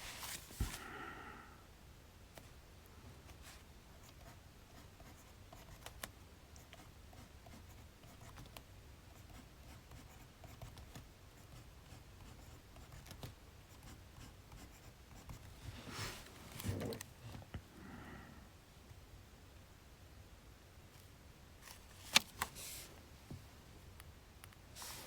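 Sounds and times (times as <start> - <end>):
paper rustle: 0.0 - 0.8, 21.6 - 22.9
low room hum: 0.0 - 25.0.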